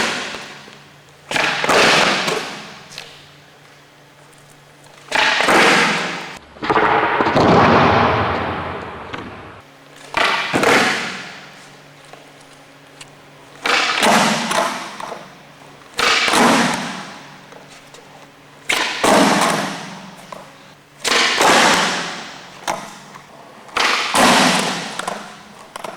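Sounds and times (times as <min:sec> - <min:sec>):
skateboard wheels rolling: 0:00.0 - 0:06.9, 0:08.8 - 0:25.9
skateboard clacking on pavement: 0:16.0 - 0:18.0.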